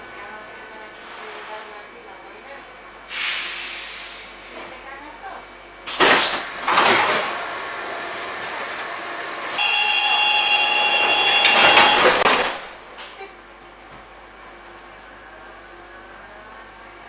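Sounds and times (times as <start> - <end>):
train running noise: 0.0 - 17.0.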